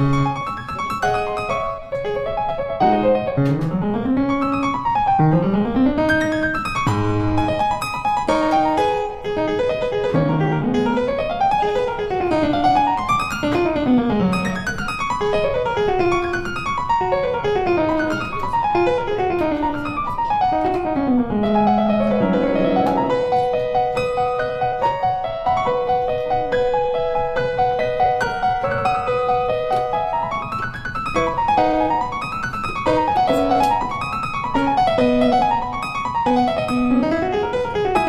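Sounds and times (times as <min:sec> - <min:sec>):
piano music with rippling runs: 0:00.0 - 0:38.0.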